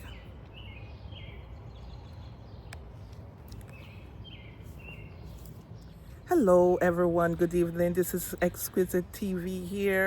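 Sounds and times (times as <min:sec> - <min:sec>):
bird chirps: 0:00.0 - 0:07.8
low outdoor rumble: 0:00.0 - 0:10.0.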